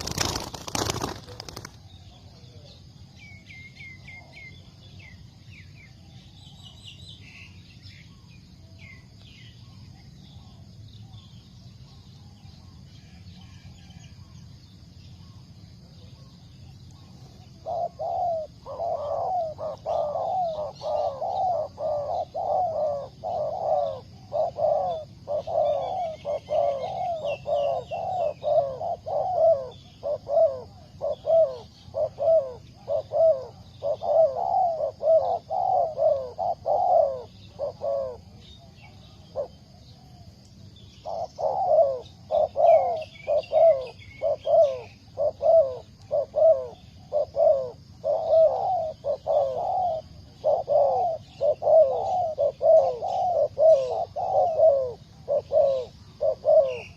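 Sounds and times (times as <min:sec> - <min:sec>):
dove cooing: 0:00.0 - 0:04.8, 0:17.0 - 0:40.3, 0:41.0 - 0:56.9
small birds chirping: 0:00.0 - 0:56.9.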